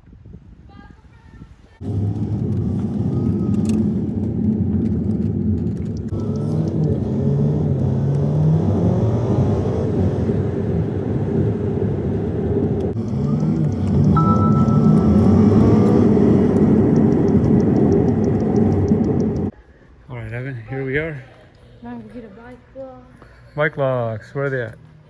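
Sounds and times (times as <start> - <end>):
car engine: 1.8 - 19.5
road noise: 1.8 - 19.6.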